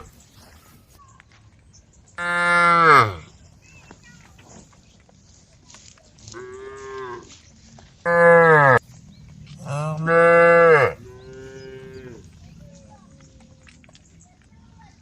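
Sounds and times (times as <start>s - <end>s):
cattle mooing: 2.2s - 3.2s, 8.1s - 8.8s, 9.6s - 12.3s.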